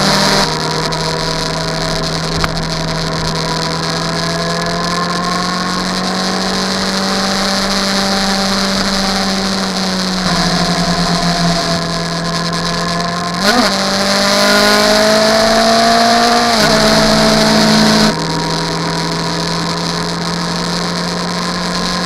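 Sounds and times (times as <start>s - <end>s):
engine droning: 0.0s - 22.0s
faint gliding tones: 9.9s - 13.4s.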